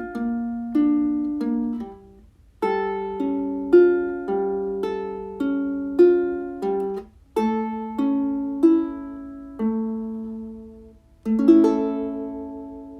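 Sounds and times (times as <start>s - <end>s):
ukulele chords plucked slowly: 0.0s - 12.9s.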